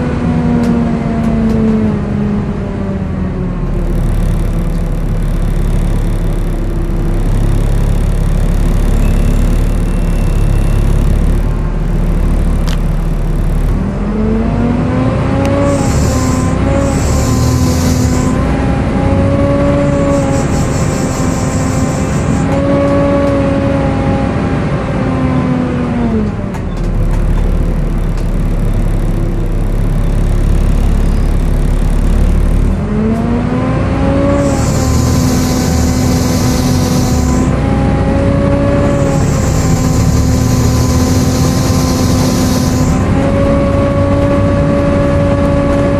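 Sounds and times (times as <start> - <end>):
bus engine: 0.0 - 45.9
screechy cooling fan whine: 3.7 - 24.0, 34.1 - 45.9.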